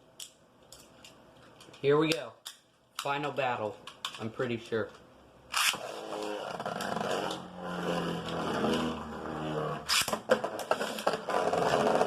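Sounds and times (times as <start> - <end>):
ripcord rip: 5.5 - 10.2
spinning tops whirring and scraping: 5.5 - 12.0.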